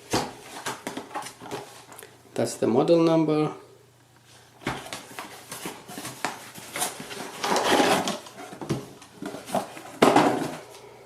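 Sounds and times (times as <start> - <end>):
plastic object rustling and scraping: 4.7 - 10.7.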